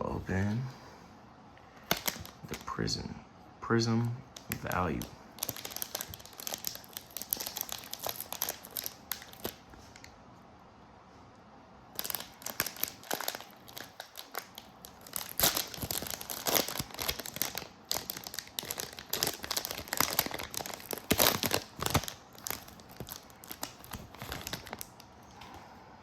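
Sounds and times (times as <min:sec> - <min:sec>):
card pack wrappers crinkling: 0:01.8 - 0:02.8, 0:04.3 - 0:10.1, 0:11.9 - 0:25.4.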